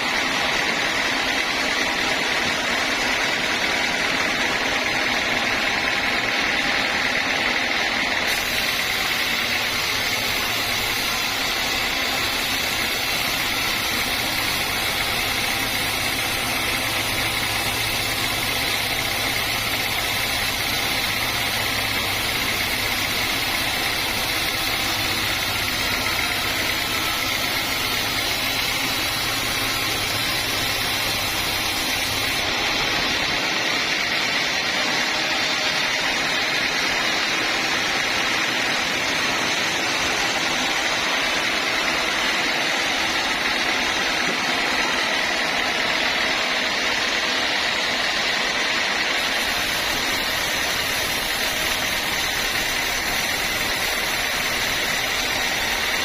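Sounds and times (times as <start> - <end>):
band sawmill running: 0.0 - 56.0.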